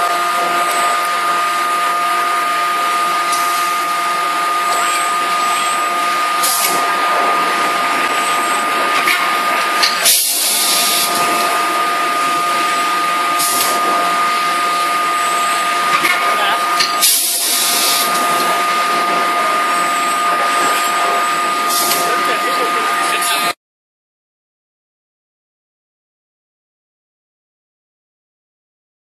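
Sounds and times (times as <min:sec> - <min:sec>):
machine hum: 0:00.0 - 0:23.6.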